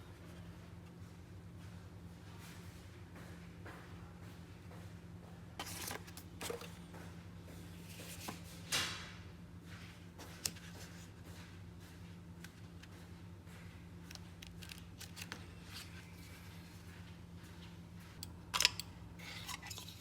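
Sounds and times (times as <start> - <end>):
steady low hum: 0.0 - 20.0
packaging rustling and scraping: 5.6 - 6.8, 14.4 - 16.9, 19.2 - 20.0.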